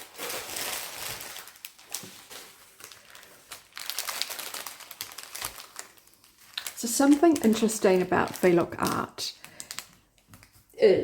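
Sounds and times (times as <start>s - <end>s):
paper and packaging rustling: 0.0s - 10.8s.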